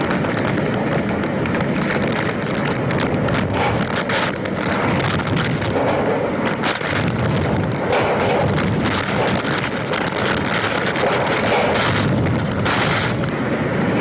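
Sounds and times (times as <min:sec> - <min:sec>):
heavy rain: 0:00.0 - 0:14.0
strong wind: 0:00.0 - 0:14.0
wind gusts thumping microphone: 0:00.0 - 0:14.0.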